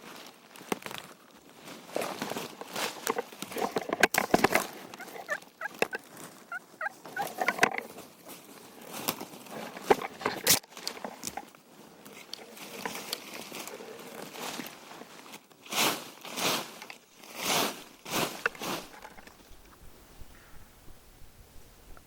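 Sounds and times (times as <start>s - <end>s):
leaves rustling and clicks: 0.0s - 20.5s
turkey gobbling: 3.6s - 7.7s.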